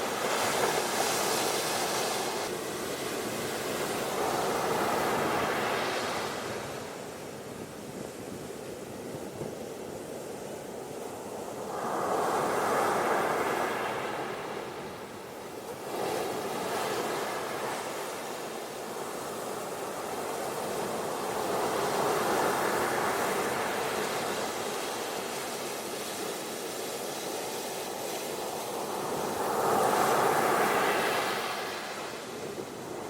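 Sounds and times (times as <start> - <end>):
ocean waves breaking on beach: 0.0 - 33.0.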